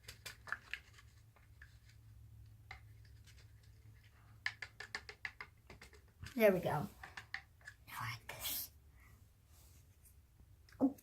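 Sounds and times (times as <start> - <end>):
stick scraping and clicking container: 0.0 - 2.0.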